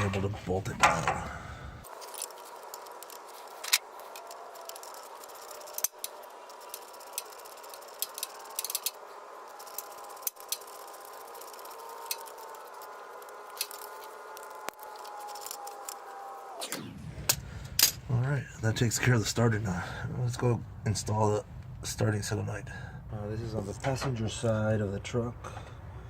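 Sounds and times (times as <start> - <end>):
steady hum: 0.0 - 26.0
ratchet wrench clicking: 2.0 - 16.0.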